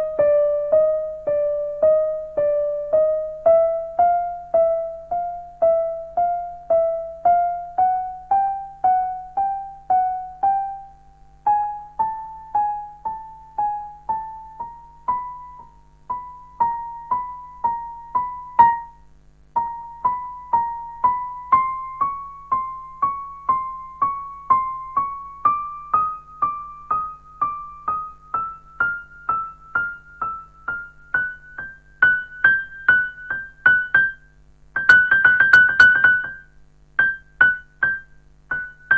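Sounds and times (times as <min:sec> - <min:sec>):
digital piano single notes: 0:19.6 - 0:38.9.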